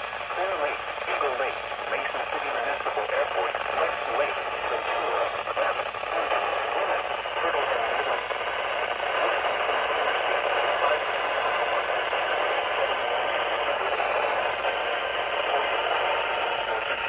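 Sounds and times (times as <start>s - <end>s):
radio static hiss: 0.0s - 17.0s.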